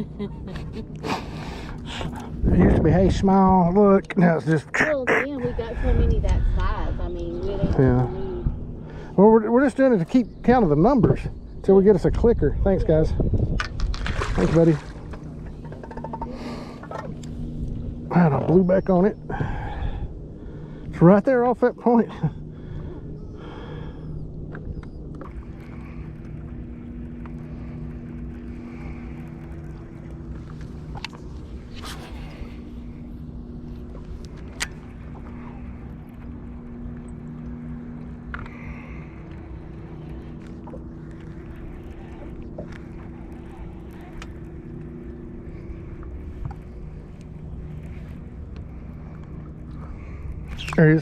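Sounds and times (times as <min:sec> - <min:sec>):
low rumble: 0:00.0 - 0:03.8, 0:05.0 - 0:21.2, 0:22.1 - 0:51.0
boat motor humming: 0:00.0 - 0:51.0
faint ticks: 0:24.5 - 0:31.4, 0:33.8 - 0:50.8.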